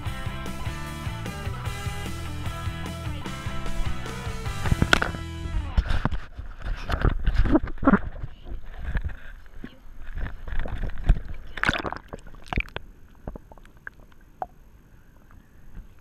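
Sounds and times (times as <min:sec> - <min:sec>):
knocks and clicks of gear: 0:04.6 - 0:05.2.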